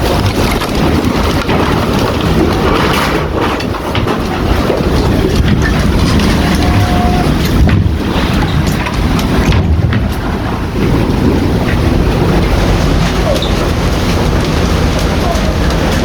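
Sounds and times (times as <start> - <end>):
crackling knocks: 0.0 - 16.0
strong wind buffeting microphone: 0.0 - 16.0.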